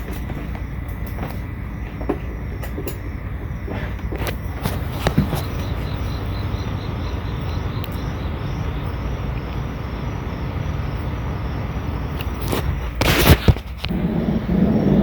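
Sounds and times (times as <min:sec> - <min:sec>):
steady low rumble: 0:00.0 - 0:13.1, 0:13.9 - 0:15.0
insect chirping: 0:00.0 - 0:15.0.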